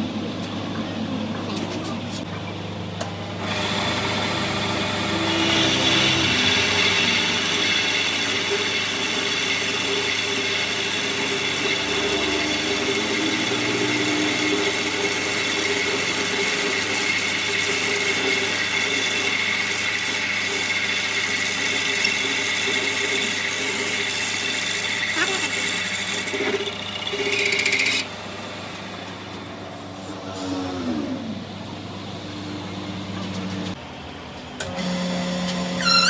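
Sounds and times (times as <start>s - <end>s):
power tool whining: 3.4s - 28.1s.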